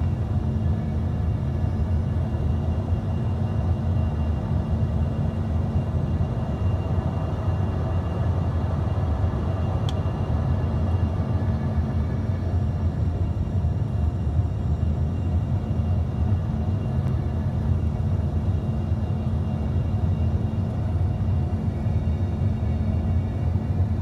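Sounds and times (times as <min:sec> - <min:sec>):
airliner cabin engine rumble: 0:00.0 - 0:24.0.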